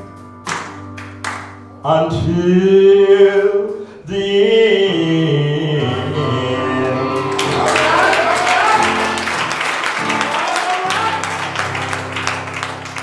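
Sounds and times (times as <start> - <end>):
people clapping: 0.5 - 1.6, 7.1 - 13.0
person singing gospel song: 1.8 - 9.2.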